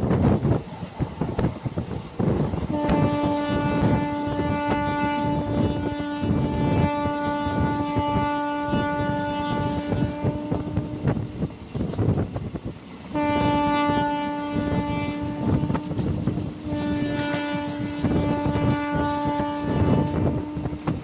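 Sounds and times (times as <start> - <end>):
train wheels clacking on rails: 0.0 - 21.0
locomotive horn blasts: 2.6 - 11.3, 13.1 - 21.0.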